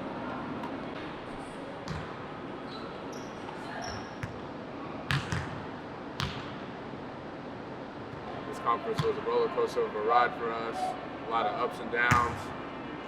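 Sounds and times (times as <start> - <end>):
gym hubbub: 0.0 - 5.8, 6.7 - 13.0
sneaker squeaks: 1.8 - 4.4
basketballs bouncing on hardwood: 1.9 - 2.1, 5.1 - 5.6.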